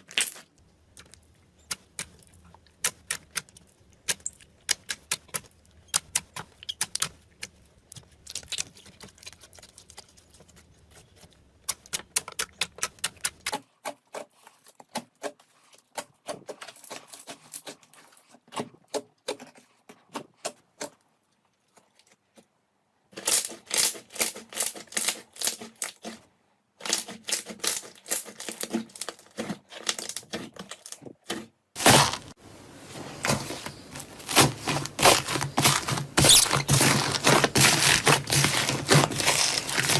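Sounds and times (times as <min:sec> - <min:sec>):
slime crackling and popping: 0:00.0 - 0:10.4.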